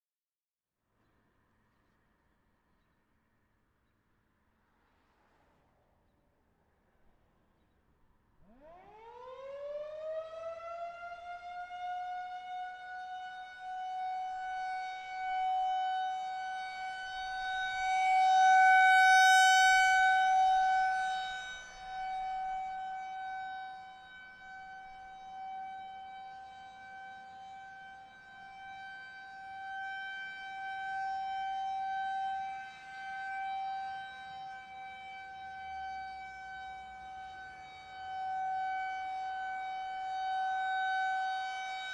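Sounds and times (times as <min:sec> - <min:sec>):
rotating warning siren: 0:08.4 - 0:41.9.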